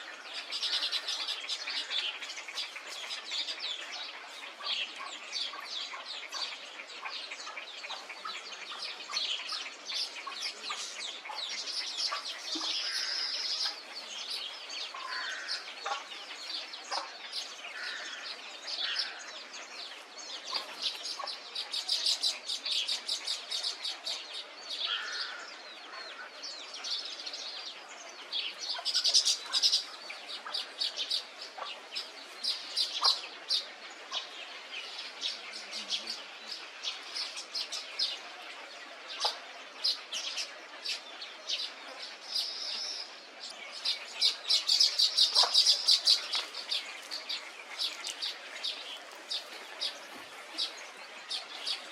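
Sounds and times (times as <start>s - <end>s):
low bird calls: 0.0s - 19.8s, 24.8s - 27.0s
birds chirping: 0.0s - 51.9s.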